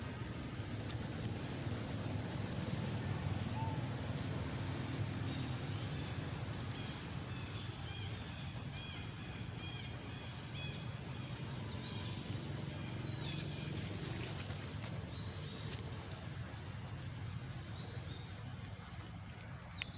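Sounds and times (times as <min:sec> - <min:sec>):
birds chirping: 0:03.4 - 0:16.7.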